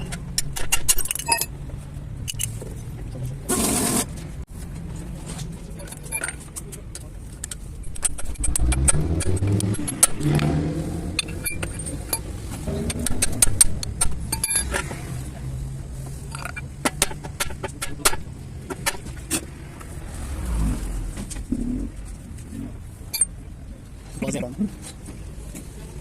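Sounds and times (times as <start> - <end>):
metallic clicks of hand tools: 7.4 - 15.0.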